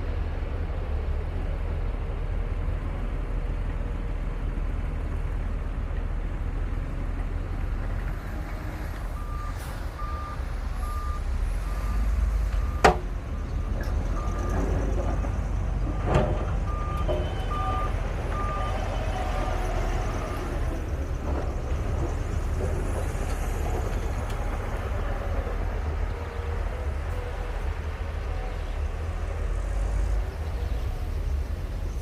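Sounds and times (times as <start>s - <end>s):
diesel machinery rumbling: 0.0s - 32.0s
reversing alarm beeping: 9.2s - 13.0s, 16.7s - 20.5s.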